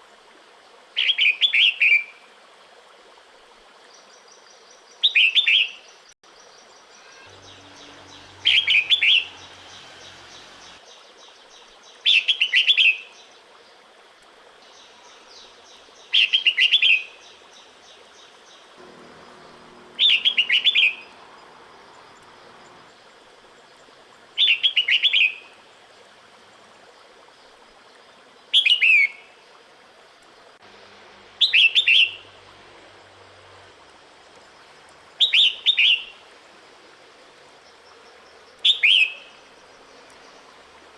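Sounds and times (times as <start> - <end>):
bird chirping call: 6.7 - 10.8, 18.8 - 23.0.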